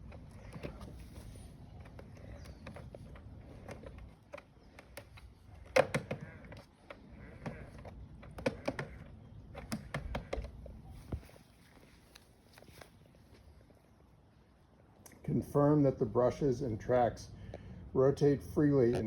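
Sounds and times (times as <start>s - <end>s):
plastic clicks and knocks: 1.8s - 11.2s.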